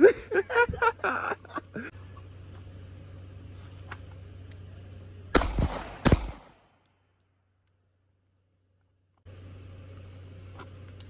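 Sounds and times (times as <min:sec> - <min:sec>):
pistol shots: 0:05.3 - 0:06.8.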